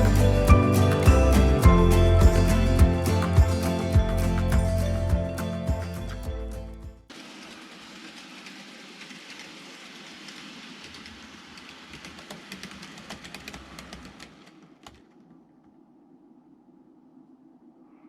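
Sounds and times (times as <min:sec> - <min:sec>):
model train motor whir: 0:07.4 - 0:13.9.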